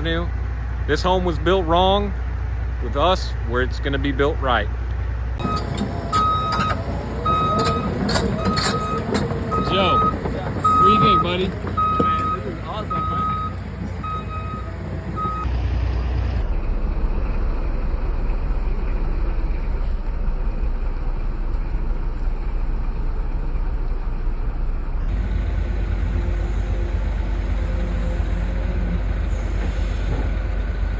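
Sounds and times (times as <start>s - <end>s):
diesel engine rumbling: 0.0s - 30.9s
backup alarm beeping: 5.4s - 15.5s.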